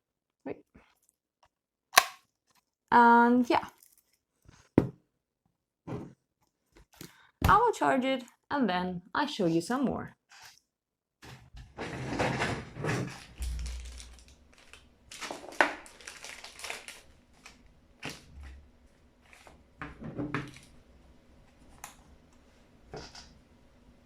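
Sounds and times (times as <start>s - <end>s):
packaging crinkling and rustling: 13.0s - 19.6s.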